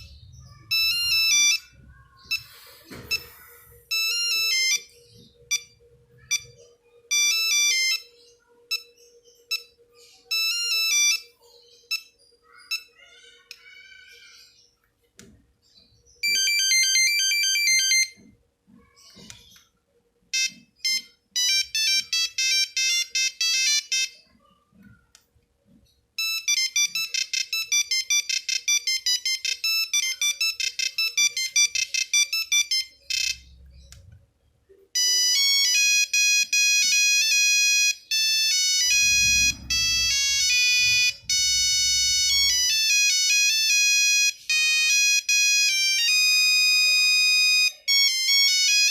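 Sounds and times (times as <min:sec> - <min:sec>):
mobile phone beeping ringtones: 0:00.0 - 0:12.9, 0:16.2 - 0:18.2, 0:20.3 - 0:24.2, 0:26.2 - 0:33.8, 0:35.0 - 0:48.9
low rumble: 0:38.9 - 0:42.8.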